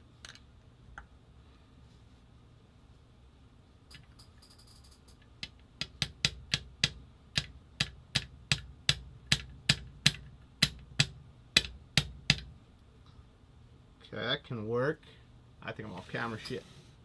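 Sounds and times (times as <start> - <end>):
tool tapping on metal: 3.9 - 12.6.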